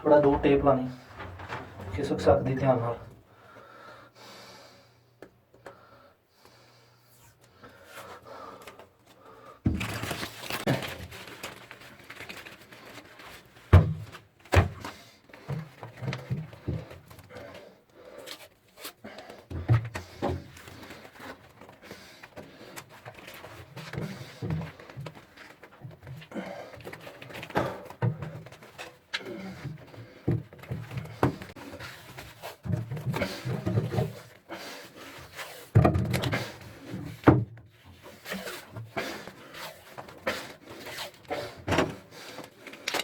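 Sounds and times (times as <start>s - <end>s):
knocks and clatter of repair work: 0.0s - 3.2s, 19.4s - 34.3s, 35.7s - 36.4s.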